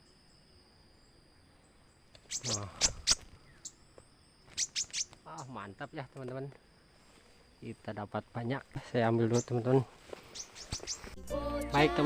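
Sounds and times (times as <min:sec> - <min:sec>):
high-pitched insect drone: 0:00.0 - 0:12.0
sharp high chirps: 0:02.2 - 0:03.8, 0:04.5 - 0:05.6, 0:10.2 - 0:11.2.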